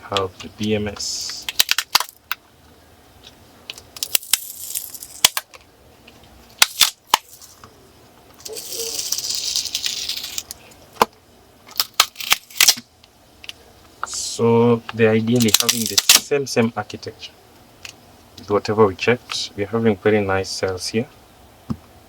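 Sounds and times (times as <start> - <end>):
crinkling rustle: 3.2 - 10.8, 15.4 - 16.2.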